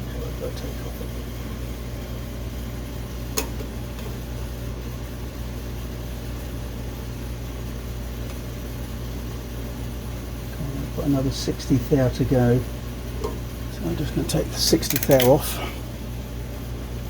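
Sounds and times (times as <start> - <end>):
sharp click: 14.8 - 15.3.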